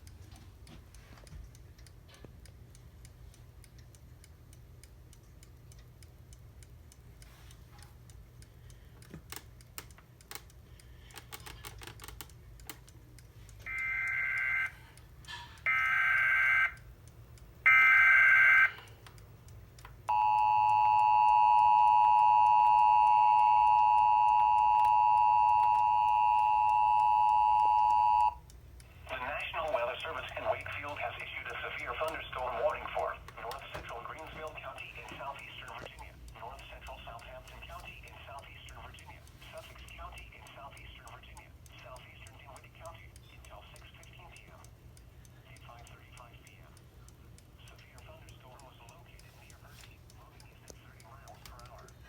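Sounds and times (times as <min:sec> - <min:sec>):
faint clicks: 0:00.0 - 0:14.2, 0:24.2 - 0:52.0
steady two-tone attention signal: 0:20.1 - 0:28.4.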